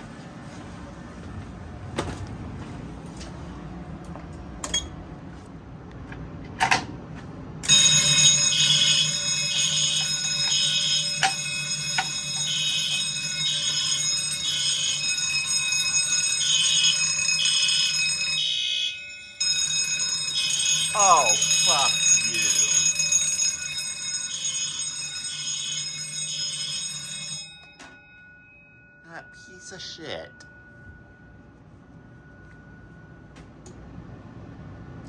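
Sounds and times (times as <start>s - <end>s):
pulsing alarm sounder: 7.6s - 33.4s
fire alarm bells ringing: 7.6s - 33.7s.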